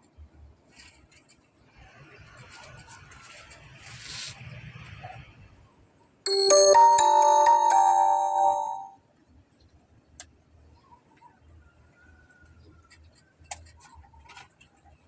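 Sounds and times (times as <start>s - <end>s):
bell-like chime melody: 6.3s - 9.0s.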